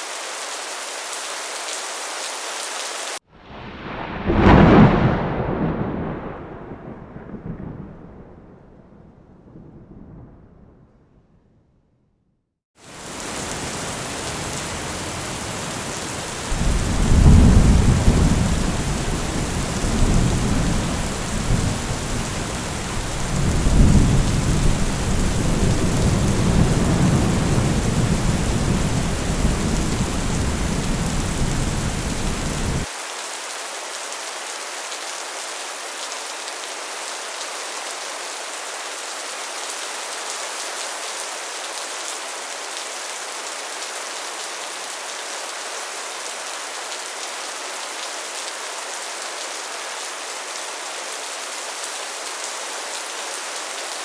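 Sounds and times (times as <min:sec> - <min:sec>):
heavy rain on a metal roof: 0:00.0 - 0:08.1, 0:12.8 - 0:54.0
thunder rumbling: 0:03.4 - 0:11.9, 0:13.1 - 0:32.9.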